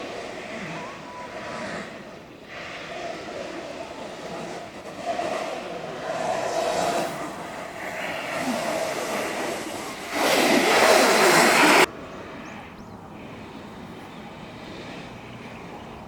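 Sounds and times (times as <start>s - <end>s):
board rolling on pavement: 0.0s - 12.0s.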